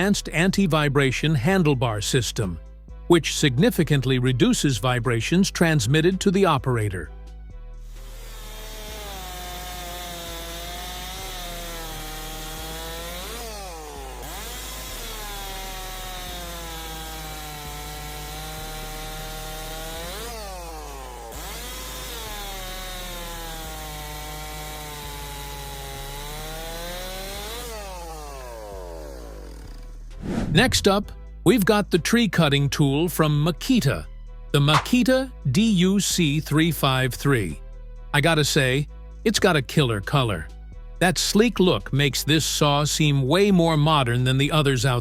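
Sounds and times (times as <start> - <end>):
chainsaw cutting wood: 7.8 - 31.2, 34.6 - 35.1.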